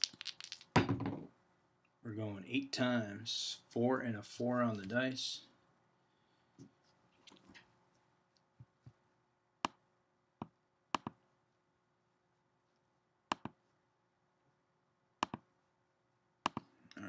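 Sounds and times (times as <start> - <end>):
computer mouse clicking: 11.0 - 11.2, 15.2 - 15.4, 16.4 - 16.7.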